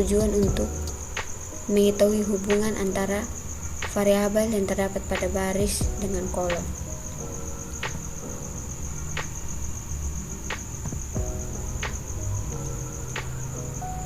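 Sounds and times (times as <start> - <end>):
cricket trilling: 0.0 - 14.0
soft musical notes: 5.1 - 14.0.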